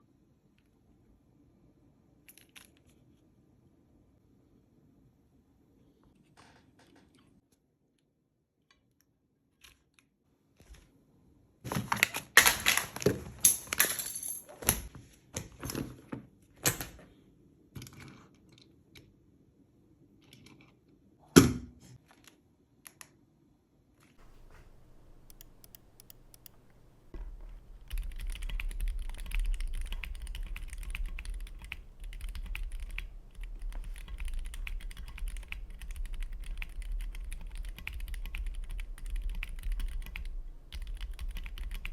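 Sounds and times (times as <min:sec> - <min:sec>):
low hum: 0:24.2 - 0:41.9
mechanical keyboard typing: 0:24.2 - 0:41.9.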